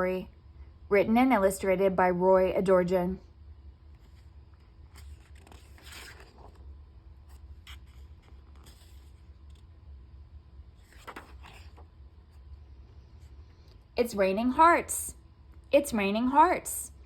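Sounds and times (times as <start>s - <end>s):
scratchy rustles and scrapes: 4.0s - 9.7s.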